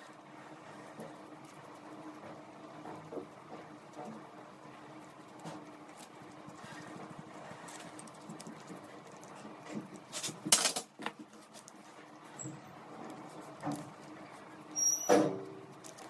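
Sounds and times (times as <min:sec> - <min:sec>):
light scratching and rustling: 0:05.0 - 0:14.6.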